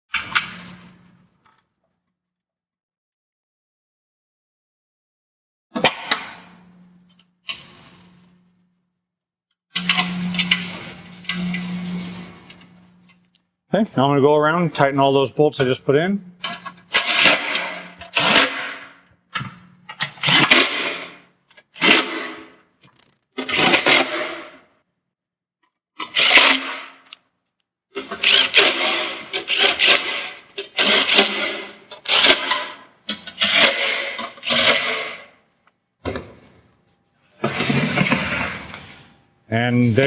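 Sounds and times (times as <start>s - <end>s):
power tool motor bursts: 9.8s - 12.6s, 16.9s - 18.9s, 26.0s - 27.0s, 28.0s - 35.2s.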